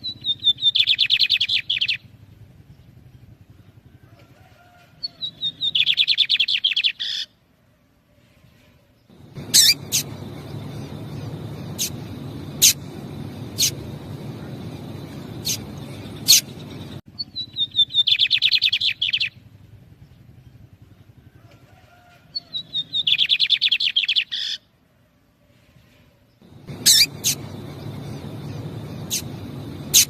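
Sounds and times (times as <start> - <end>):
bird song with buzzy trill: 0.0 - 3.5, 5.0 - 7.3, 9.1 - 19.4, 22.4 - 24.6, 26.5 - 30.0
bird call notes: 9.2 - 17.0, 26.5 - 30.0.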